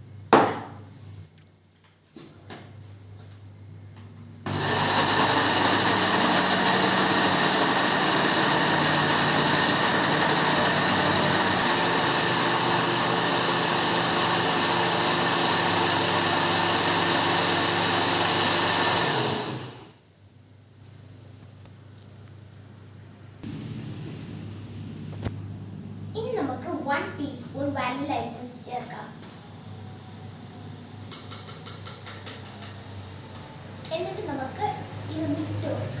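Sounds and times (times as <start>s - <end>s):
electric mixer motor running: 4.5s - 20.0s.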